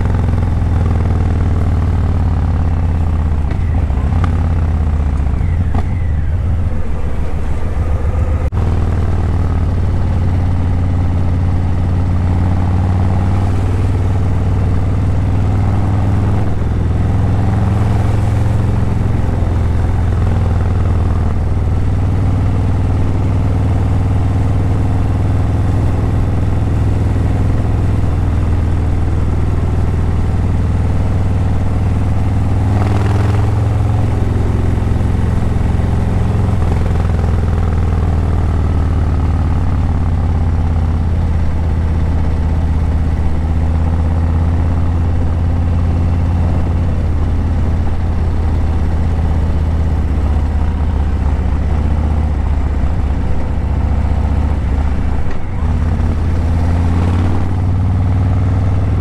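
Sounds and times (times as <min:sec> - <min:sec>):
motorcycle engine running: 0:00.0 - 0:59.0
loud rush of noise: 0:01.5 - 0:26.8.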